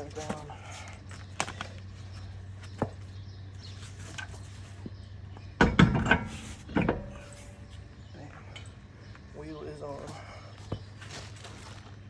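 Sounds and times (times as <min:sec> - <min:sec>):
car wheel clunking onto hub: 0:05.4 - 0:07.3.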